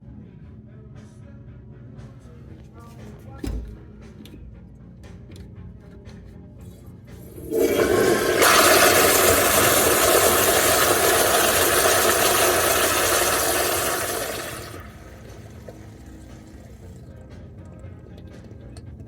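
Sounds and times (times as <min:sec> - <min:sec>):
toilet flushing: 0:07.2 - 0:18.9.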